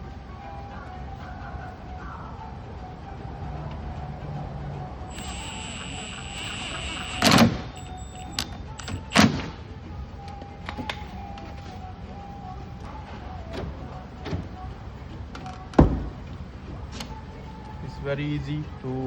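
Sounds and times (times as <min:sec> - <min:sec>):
door handle clicks: 0:07.2 - 0:09.5
loud sharp knocks: 0:15.8 - 0:16.2.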